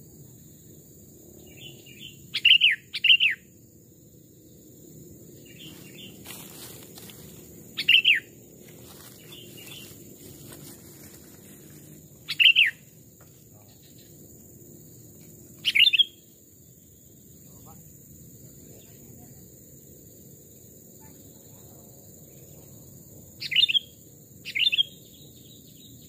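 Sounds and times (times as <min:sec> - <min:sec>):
bird chirping calls: 0:01.4 - 0:03.4, 0:07.8 - 0:08.3, 0:09.1 - 0:10.0, 0:12.2 - 0:12.9, 0:15.6 - 0:16.2, 0:23.4 - 0:26.0
faint answering bird calls: 0:12.3 - 0:12.8.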